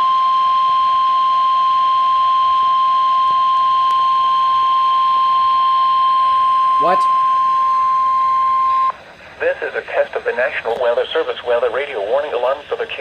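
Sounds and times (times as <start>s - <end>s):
high-pitched alarm tone: 0.0s - 9.0s.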